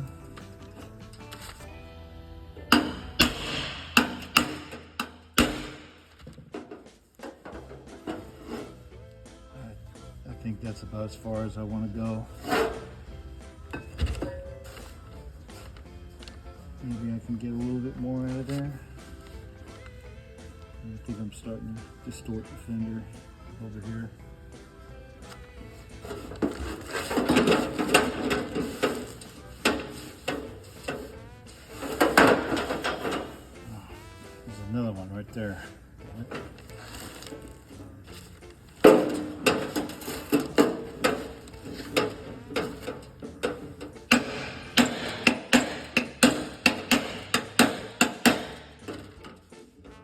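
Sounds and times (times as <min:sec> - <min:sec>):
hammer tapping on sheet metal: 0:02.7 - 0:08.6, 0:38.9 - 0:49.0.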